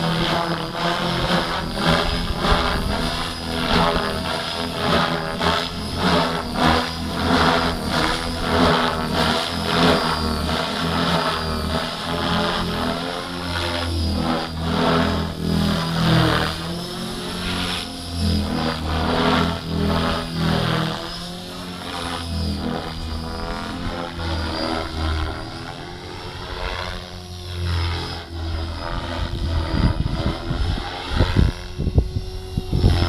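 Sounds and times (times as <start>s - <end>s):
wind buffeting microphone: 0.0s - 11.1s, 28.4s - 33.0s
model helicopter rotor hum: 0.0s - 33.0s
whooshing rotor blades: 0.0s - 33.0s.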